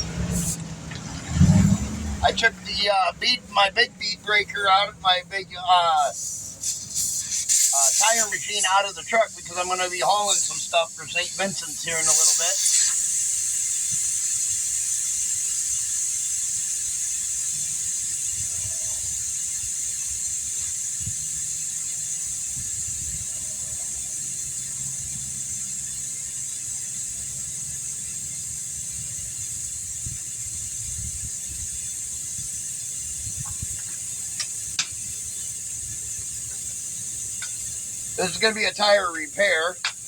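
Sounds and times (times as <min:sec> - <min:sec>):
air hissing out of tire valve: 0:00.0 - 0:40.0.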